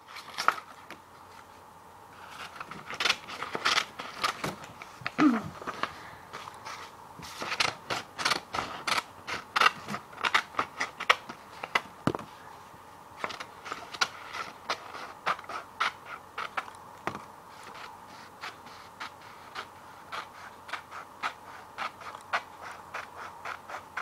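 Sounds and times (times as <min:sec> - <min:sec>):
scissors snipping paper: 0:07.4 - 0:11.8, 0:17.6 - 0:24.0.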